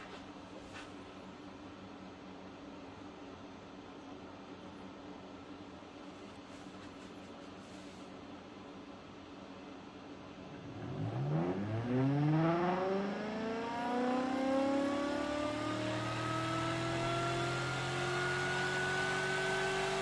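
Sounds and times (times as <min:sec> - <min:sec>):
motor whine spinning up: 0:10.5 - 0:20.0.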